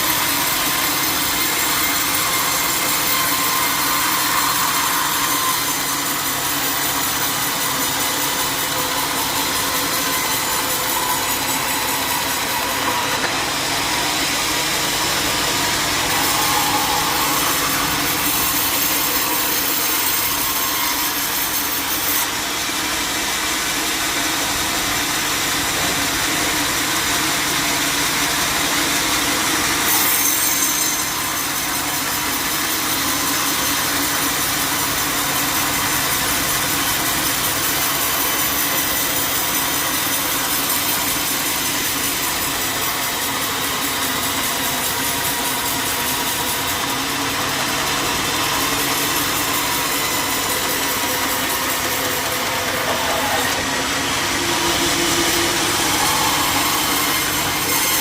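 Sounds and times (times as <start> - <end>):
band saw cutting log: 0.0 - 58.0.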